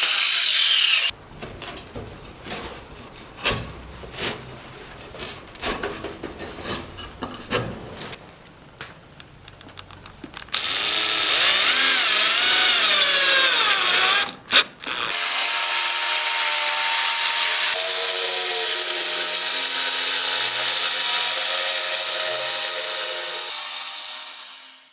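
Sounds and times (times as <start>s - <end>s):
power tool whirring: 0.0s - 1.1s, 10.5s - 24.9s.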